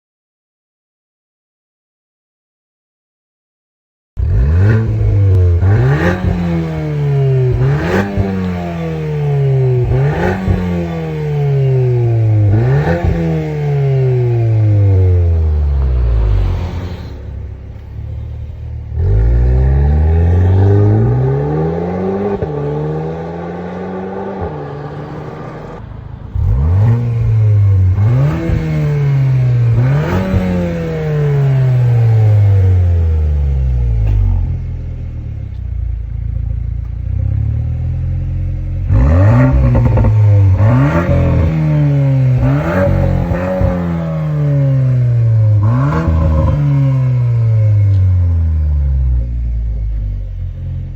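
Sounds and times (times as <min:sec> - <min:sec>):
car engine revving: 0:04.2 - 0:50.9.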